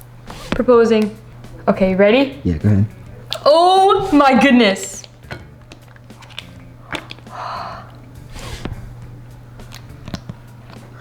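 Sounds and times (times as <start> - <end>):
low hum: 0.0 - 11.0
hot oil crackling and popping: 5.0 - 8.2.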